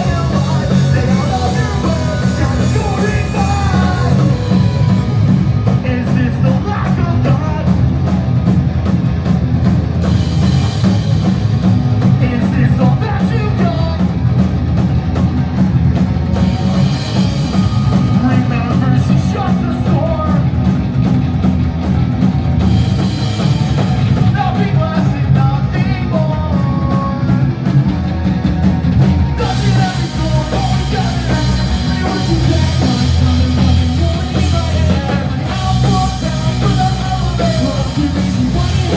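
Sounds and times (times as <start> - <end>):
person singing lead vocal: 0.0 - 8.0, 12.0 - 14.3, 17.5 - 20.8, 24.0 - 27.6, 29.3 - 38.9
pop-punk band playing live: 0.0 - 38.9.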